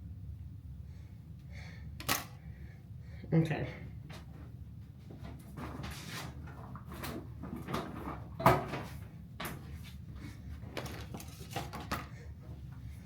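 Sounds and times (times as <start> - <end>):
handling rustles and soft knocks: 4.0 - 13.0.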